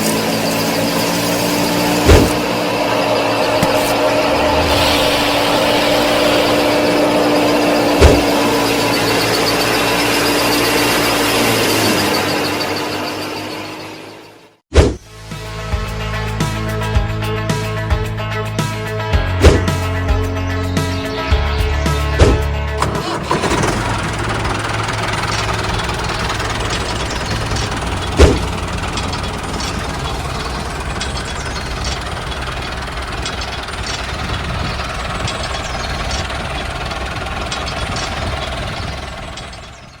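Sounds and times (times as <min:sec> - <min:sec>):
small engine rattling: 0:00.0 - 0:14.2, 0:22.2 - 0:40.0
instrumental background music: 0:15.0 - 0:23.1
low drum thump: 0:19.4 - 0:19.8, 0:22.2 - 0:22.5
sharp loud knock: 0:19.4 - 0:19.8.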